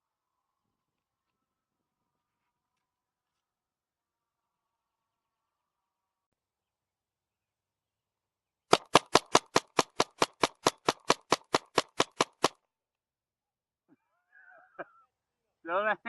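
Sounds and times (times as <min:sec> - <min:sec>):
paintball marker rapid firing: 0:08.7 - 0:12.6.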